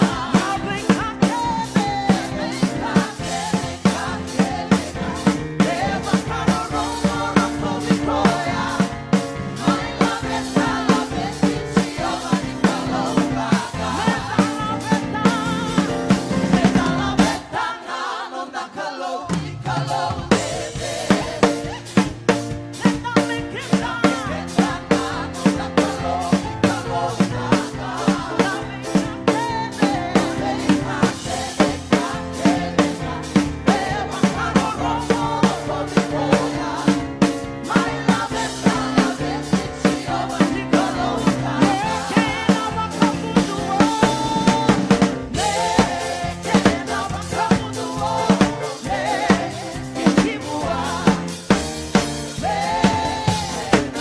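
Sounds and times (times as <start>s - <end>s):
snare and bass drum hits: 0.0s - 17.5s, 19.9s - 54.0s
live band music: 0.0s - 54.0s
person singing: 37.2s - 51.2s.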